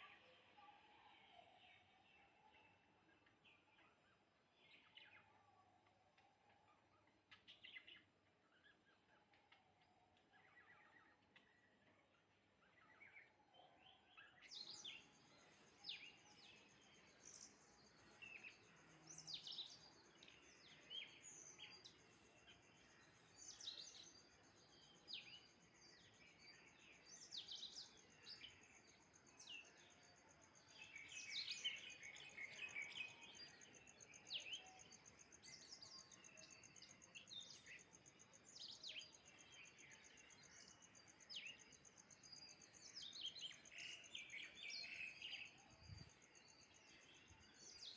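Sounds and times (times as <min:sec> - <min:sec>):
small birds chirping: 0:00.0 - 0:47.9.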